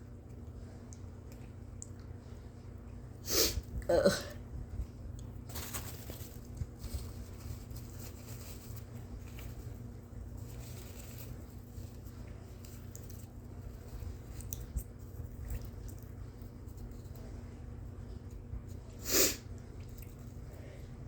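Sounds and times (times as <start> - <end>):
low steady hum: 0.0 - 21.0
soft squishing and rubbing: 4.8 - 21.0.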